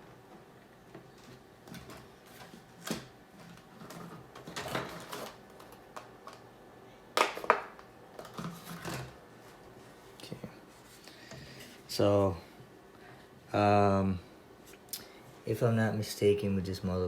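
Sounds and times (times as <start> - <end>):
plastic and metal parts handled: 1.2 - 6.4.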